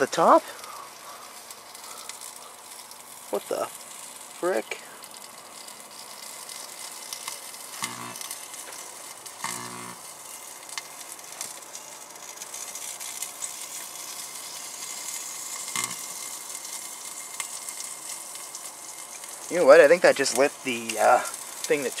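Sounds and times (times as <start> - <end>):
crackling sizzle of arcing: 0.0 - 22.0
short buzzes: 7.8 - 8.2, 9.4 - 10.0, 15.8 - 16.1.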